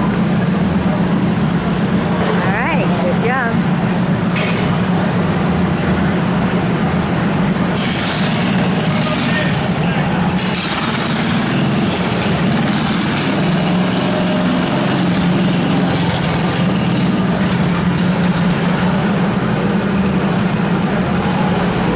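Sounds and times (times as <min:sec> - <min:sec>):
lawn mower engine running: 0:06.6 - 0:21.1.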